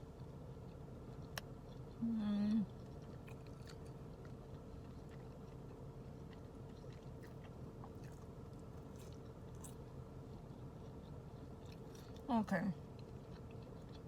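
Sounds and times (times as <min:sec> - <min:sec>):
faint steady hum: 0:00.0 - 0:14.0
person chewing: 0:00.0 - 0:14.0.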